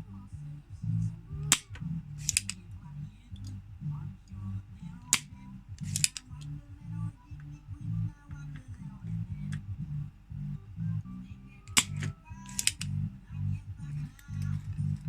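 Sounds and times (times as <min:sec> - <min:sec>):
background music with bass line: 0:00.0 - 0:15.0
hand tool clicking: 0:01.5 - 0:02.6, 0:05.1 - 0:06.4, 0:11.7 - 0:13.0.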